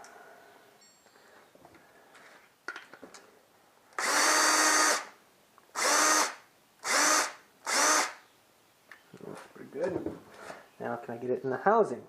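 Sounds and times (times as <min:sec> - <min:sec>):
electric drill whining: 0:04.0 - 0:05.2, 0:05.8 - 0:08.2.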